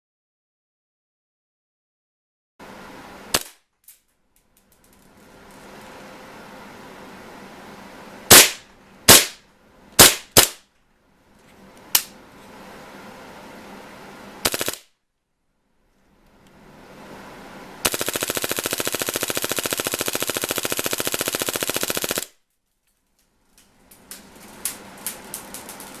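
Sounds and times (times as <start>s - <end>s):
airsoft gun firing full-auto bursts: 8.3s - 9.4s, 10.0s - 10.6s, 14.4s - 14.9s, 17.8s - 22.3s.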